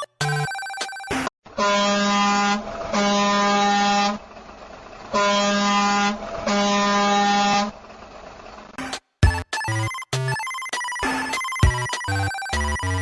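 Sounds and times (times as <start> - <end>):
truck horn blasts: 1.5 - 4.3, 5.1 - 7.8.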